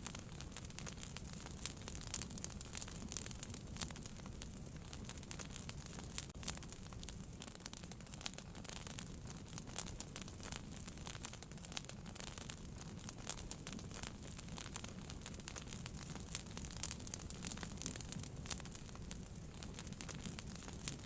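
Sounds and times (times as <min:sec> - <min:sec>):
low fire rumble: 0:00.0 - 0:21.0
wood fire crackling and popping: 0:00.0 - 0:21.0.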